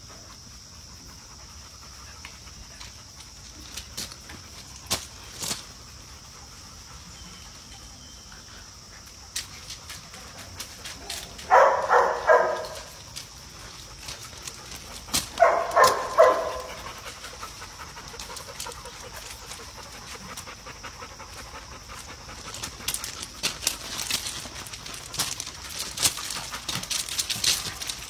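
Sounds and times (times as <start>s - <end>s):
dogs barking: 11.1s - 13.1s, 14.4s - 23.3s.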